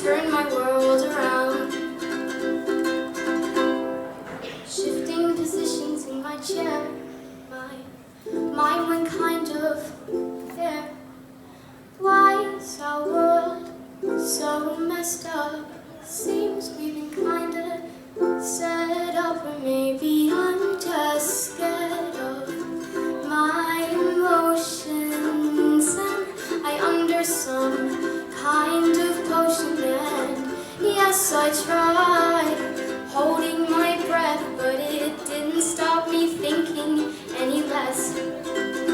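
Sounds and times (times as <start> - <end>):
girl singing: 0.0 - 11.3, 11.9 - 38.9
plucked-string chords: 20.3 - 38.9.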